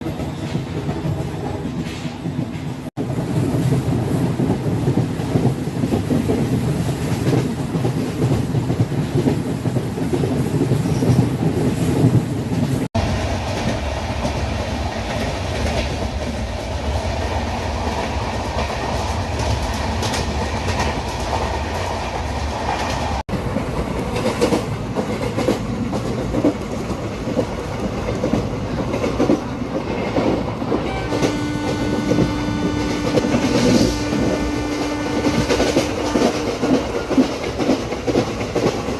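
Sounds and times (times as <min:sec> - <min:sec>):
train wheels clattering on rails: 0:00.0 - 0:38.9.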